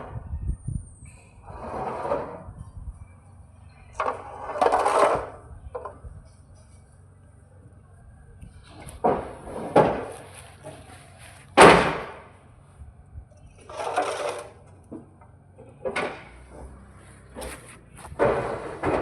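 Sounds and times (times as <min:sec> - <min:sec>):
sharp knocks and thuds: 0:08.7 - 0:10.4, 0:11.5 - 0:12.3, 0:15.8 - 0:19.0.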